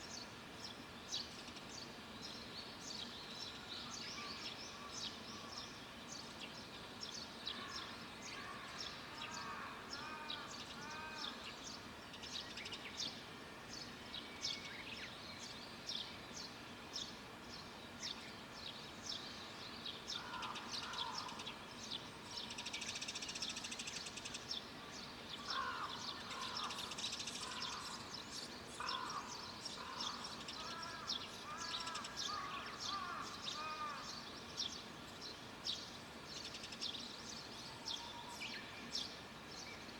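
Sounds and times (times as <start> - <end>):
lower repeated bird calls: 28.8 - 34.3.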